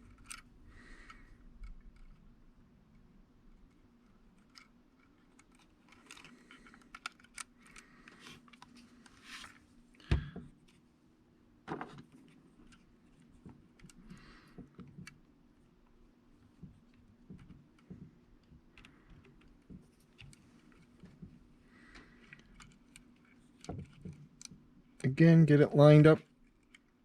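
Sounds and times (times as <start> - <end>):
plastic parts clicking: 0.0 - 0.5, 4.4 - 8.7, 26.4 - 27.0.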